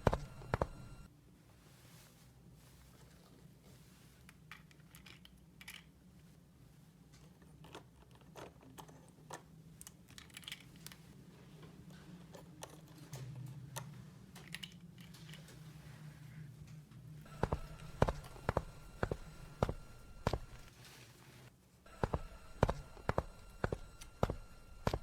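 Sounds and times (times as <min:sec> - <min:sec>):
faint low hum: 0:00.0 - 0:04.2, 0:08.7 - 0:25.0
plastic toy pieces clicking: 0:07.6 - 0:11.0.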